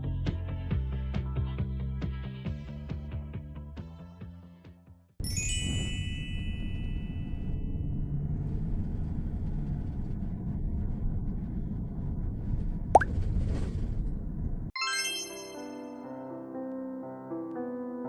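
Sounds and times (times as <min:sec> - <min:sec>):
bright chime ringing: 0:05.2 - 0:06.9, 0:14.8 - 0:16.1
low rumbling background: 0:06.4 - 0:14.7.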